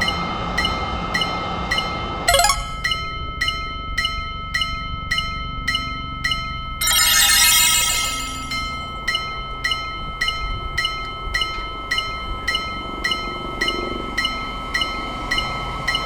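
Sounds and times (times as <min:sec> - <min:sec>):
shimmering metallic ringing: 0:06.8 - 0:08.9.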